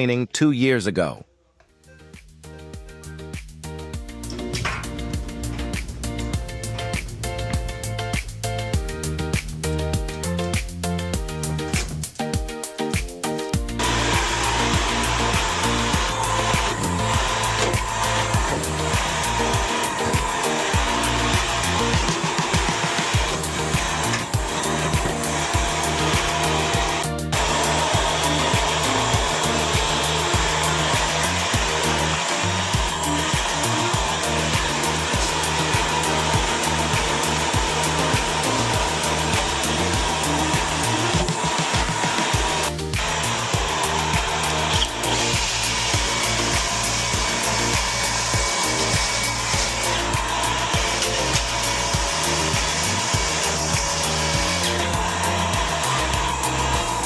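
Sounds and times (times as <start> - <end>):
music with steady beat and bass: 1.7 - 57.0
rushing hiss: 13.8 - 57.0.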